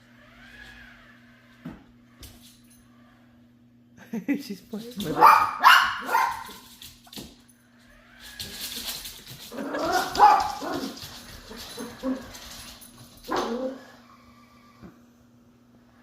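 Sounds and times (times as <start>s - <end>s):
robot vacuum humming: 0.0s - 1.9s
dog barking: 5.1s - 6.6s, 9.7s - 10.9s
dog whining: 13.3s - 14.8s.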